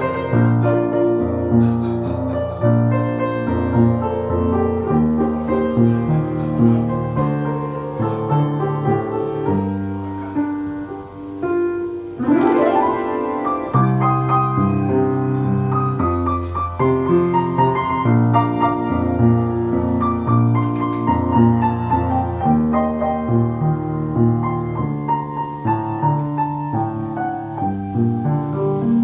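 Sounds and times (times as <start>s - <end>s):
piano music: 0.0s - 29.0s.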